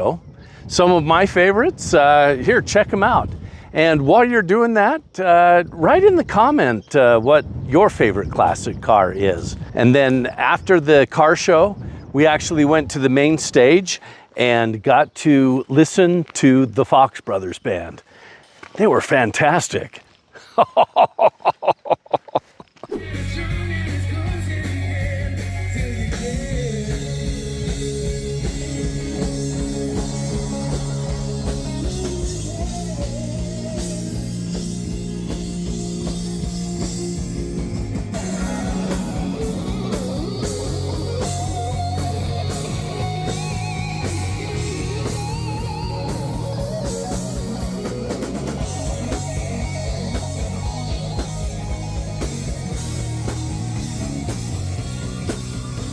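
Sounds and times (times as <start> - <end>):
drum kit: 22.9 - 55.9
electric guitar: 22.9 - 55.9
person singing: 23.0 - 34.9.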